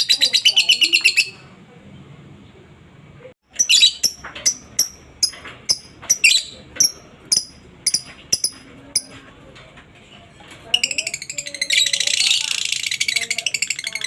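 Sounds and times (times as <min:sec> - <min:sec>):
lovebird chirping: 0:03.5 - 0:09.1.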